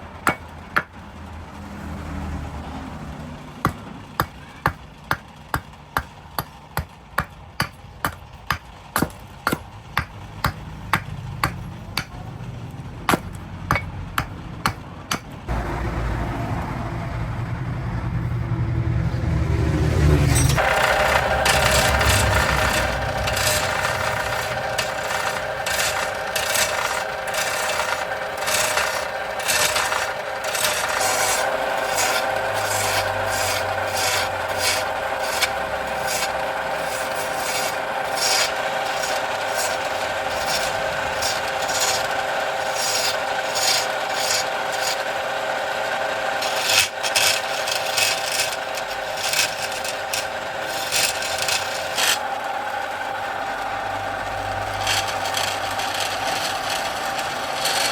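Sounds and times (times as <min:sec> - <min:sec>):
power tool grinding: 0:00.0 - 0:01.2, 0:02.9 - 0:15.9, 0:19.1 - 0:57.9
sharp scrapes: 0:20.1 - 0:45.2, 0:46.2 - 0:52.2, 0:54.8 - 0:57.9.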